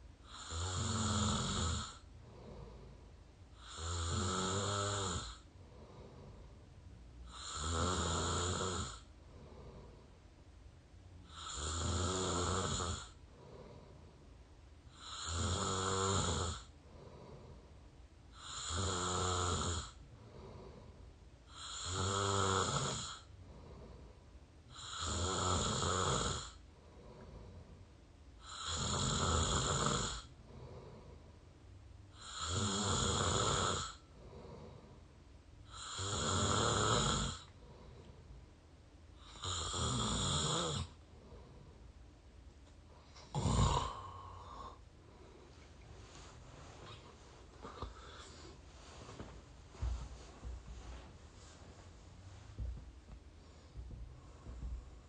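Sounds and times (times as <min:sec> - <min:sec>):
person snoring: 0:00.2 - 0:02.9, 0:03.6 - 0:06.3, 0:07.2 - 0:10.0, 0:11.2 - 0:13.9, 0:14.9 - 0:17.6, 0:18.3 - 0:20.9, 0:21.5 - 0:24.1, 0:24.7 - 0:27.5, 0:28.4 - 0:31.2, 0:32.1 - 0:34.9, 0:35.7 - 0:37.9, 0:39.2 - 0:41.5, 0:43.0 - 0:45.4, 0:46.8 - 0:49.3.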